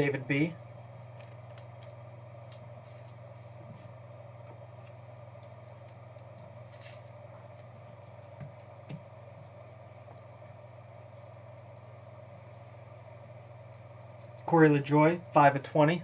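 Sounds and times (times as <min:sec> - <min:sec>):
steady low hum: 0:00.0 - 0:16.0
cards sliding and ticking: 0:01.1 - 0:04.0, 0:04.8 - 0:07.7.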